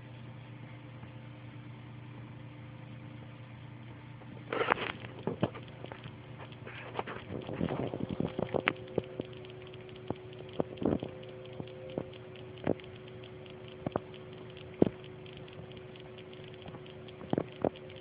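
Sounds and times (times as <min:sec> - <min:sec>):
steady low hum: 0:00.0 - 0:18.0
rabbit clicking: 0:04.5 - 0:18.0.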